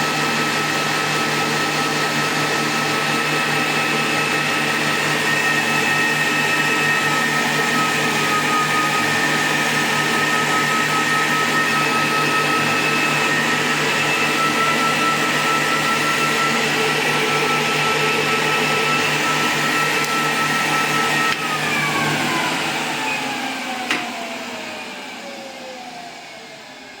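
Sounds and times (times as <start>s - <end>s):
electric motor whining: 3.6s - 26.9s.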